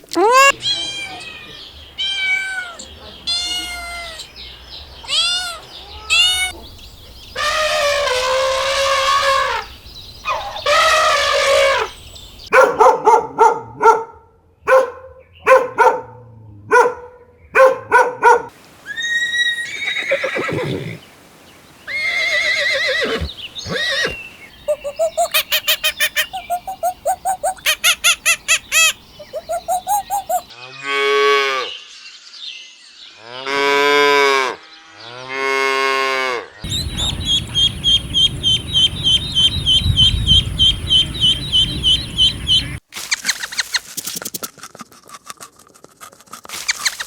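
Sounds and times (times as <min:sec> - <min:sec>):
cat meowing: 0:00.2 - 0:04.3, 0:05.0 - 0:06.6.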